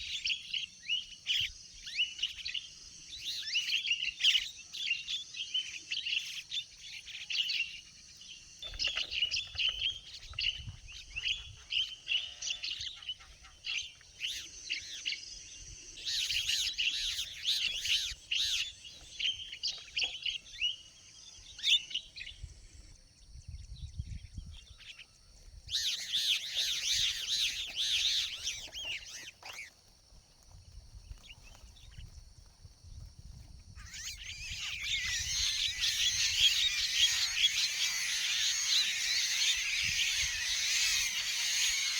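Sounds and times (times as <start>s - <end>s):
birds chirping and chattering: 0.0s - 41.9s.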